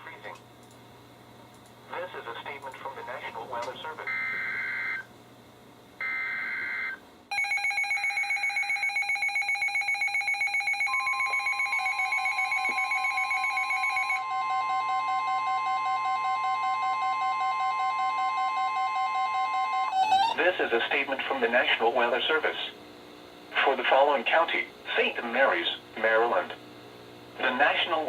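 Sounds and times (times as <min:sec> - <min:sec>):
rapid beeping alarm tones: 0:06.0 - 0:20.4
steady warning tone: 0:06.0 - 0:22.6.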